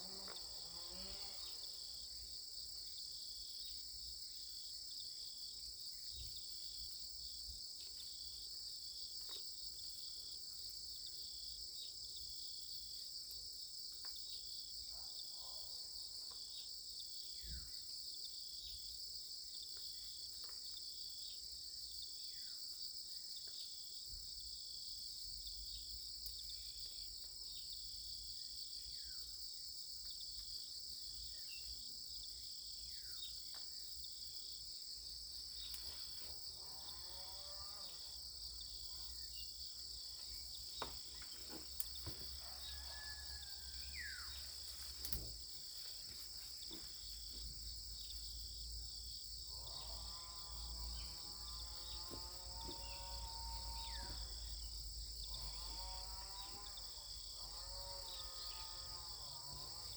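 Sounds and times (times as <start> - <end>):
insect chorus chirring: 0.0 - 59.9.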